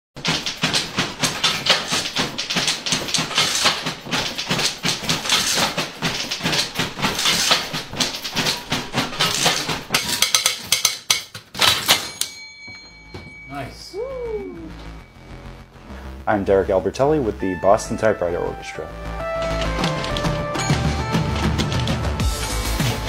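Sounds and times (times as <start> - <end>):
typewriter keys clattering: 0.2 - 12.4, 19.4 - 22.2.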